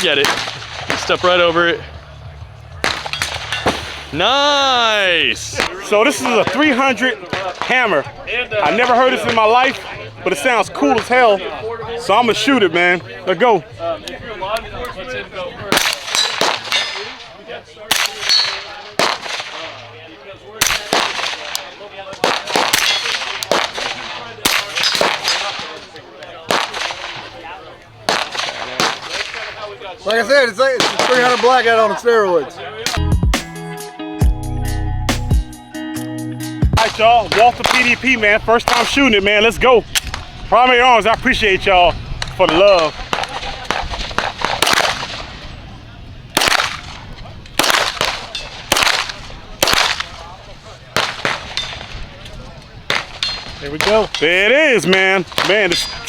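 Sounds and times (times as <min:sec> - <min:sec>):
gunshots: 0:00.0 - 0:01.6, 0:02.8 - 0:04.3, 0:05.5 - 0:09.8, 0:15.7 - 0:17.3, 0:17.9 - 0:19.9, 0:20.6 - 0:27.5, 0:28.1 - 0:29.7, 0:30.8 - 0:31.8, 0:36.8 - 0:39.0, 0:42.2 - 0:45.5, 0:46.4 - 0:47.0, 0:47.6 - 0:50.3, 0:50.9 - 0:52.0, 0:52.9 - 0:56.0
pistol shots: 0:00.1 - 0:01.2, 0:02.8 - 0:04.1, 0:15.7 - 0:17.3, 0:17.9 - 0:19.8, 0:20.6 - 0:25.8, 0:26.5 - 0:27.4, 0:28.1 - 0:29.6, 0:30.8 - 0:31.6, 0:42.5 - 0:45.4, 0:46.4 - 0:47.0, 0:47.6 - 0:50.3, 0:51.0 - 0:52.0, 0:54.9 - 0:56.0.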